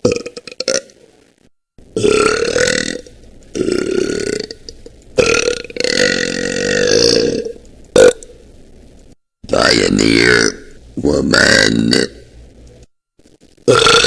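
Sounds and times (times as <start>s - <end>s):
woman belching loudly: 0.0s - 0.9s, 2.0s - 4.6s, 5.2s - 8.2s, 13.7s - 14.0s.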